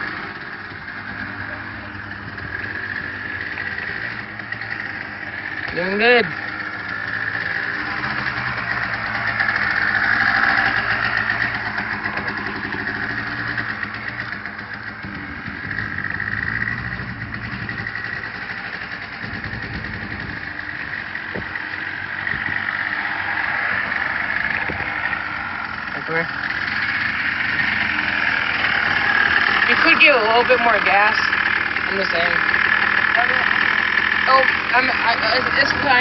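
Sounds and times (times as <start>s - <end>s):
atv engine running: 0.0s - 36.0s.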